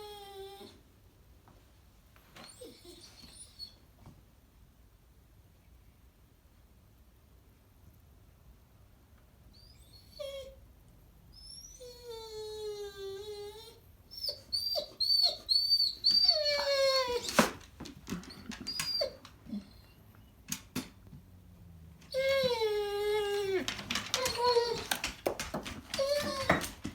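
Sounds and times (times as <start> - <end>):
dog whining and howling: 0.0 - 0.8, 2.5 - 3.8, 9.6 - 10.6, 11.3 - 20.0, 22.0 - 26.9
dog squeaking: 13.2 - 17.6, 18.2 - 20.0, 22.1 - 26.9.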